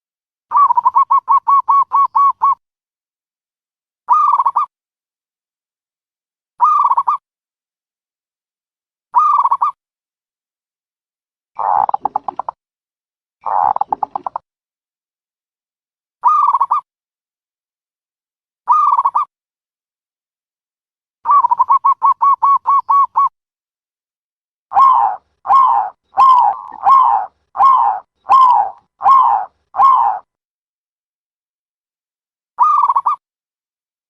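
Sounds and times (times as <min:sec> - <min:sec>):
dove calling: 0:00.5 - 0:02.6, 0:13.4 - 0:14.4, 0:21.3 - 0:23.3, 0:24.7 - 0:30.3.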